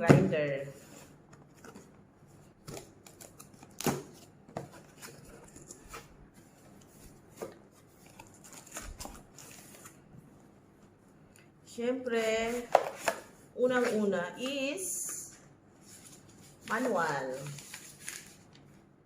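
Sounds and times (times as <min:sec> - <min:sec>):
packaging rustling: 0:00.8 - 0:10.0, 0:15.8 - 0:18.7.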